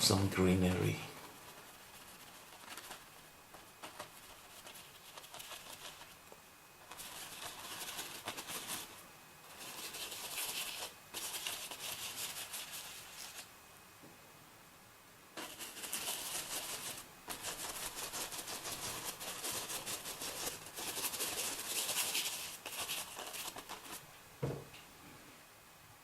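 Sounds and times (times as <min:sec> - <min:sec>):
paintbrush scratchy strokes: 0:00.7 - 0:06.2, 0:06.8 - 0:13.5, 0:15.4 - 0:24.0
knock: 0:24.4 - 0:24.7.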